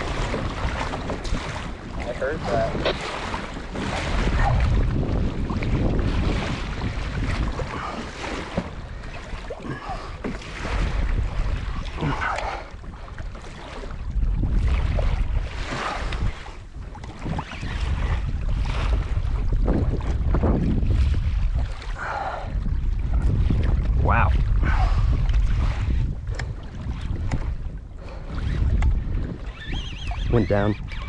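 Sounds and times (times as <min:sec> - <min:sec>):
sea water washing around kayak: 0:00.0 - 0:31.0
wind buffeting microphone: 0:00.0 - 0:31.0.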